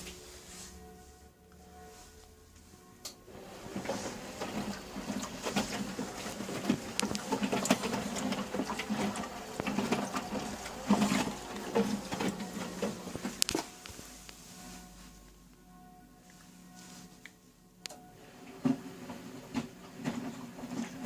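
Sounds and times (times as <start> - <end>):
washing machine motor hum: 3.2 - 14.6, 18.2 - 21.0
washing machine clicking and knocking: 3.4 - 13.5.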